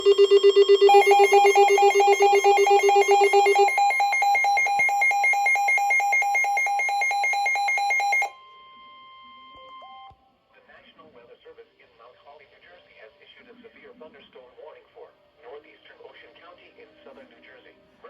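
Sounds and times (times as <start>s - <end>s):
steady warning alarm tone: 0.0s - 10.0s
electronic alarm beeping: 0.0s - 10.1s.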